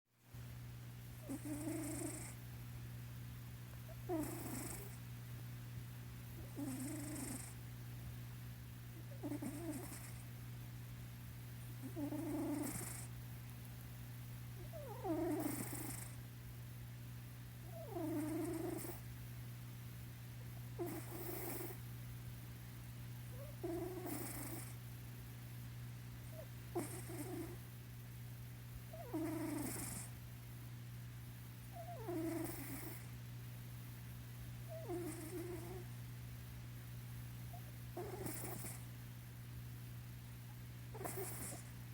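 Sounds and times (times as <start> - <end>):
cat snore-purring: 1.2 - 2.4, 3.9 - 5.0, 6.4 - 7.6, 9.0 - 10.3, 11.8 - 13.2, 14.6 - 16.2, 17.6 - 19.1, 20.5 - 21.8, 23.3 - 24.8, 26.3 - 27.7, 28.9 - 30.2, 31.7 - 33.2, 34.7 - 36.0, 37.5 - 38.9, 40.9 - 41.8.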